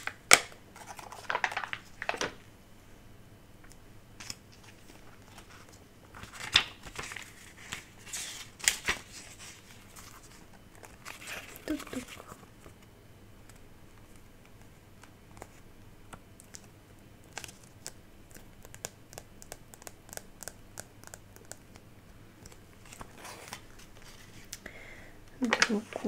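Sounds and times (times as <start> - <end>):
paper stickers clicking and crinkling: 0.0 - 2.4, 3.7 - 12.8, 13.4 - 24.6, 25.4 - 26.0.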